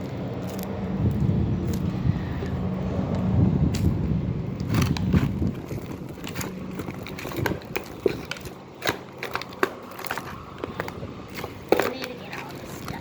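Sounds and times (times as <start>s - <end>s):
low rumble: 0.0s - 8.5s
slime kneaded with crackles: 4.6s - 13.0s.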